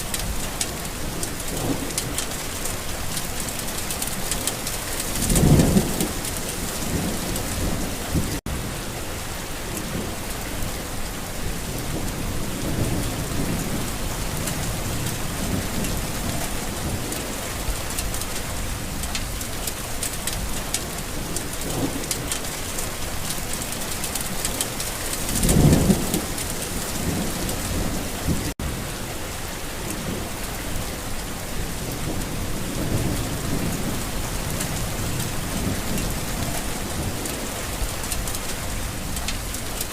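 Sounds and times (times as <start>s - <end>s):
heavy rain: 0.0s - 39.9s
thunder rumbling: 0.1s - 8.8s, 20.2s - 39.9s.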